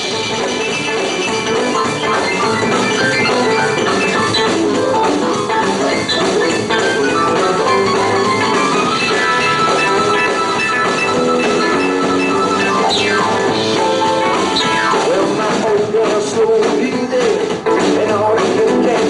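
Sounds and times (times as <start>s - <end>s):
bass guitar: 0.0s - 19.0s
drum kit: 0.0s - 19.0s
electric guitar lead: 0.0s - 19.0s.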